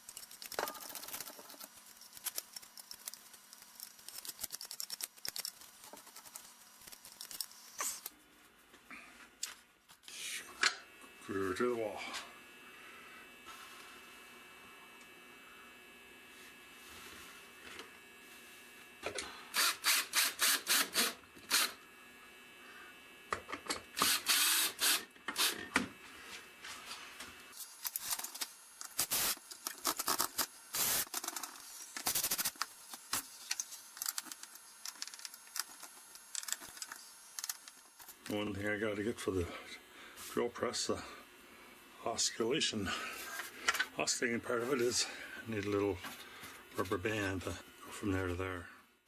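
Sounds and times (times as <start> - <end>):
power drill driving screws: 19.6 - 21.8, 24.0 - 25.6.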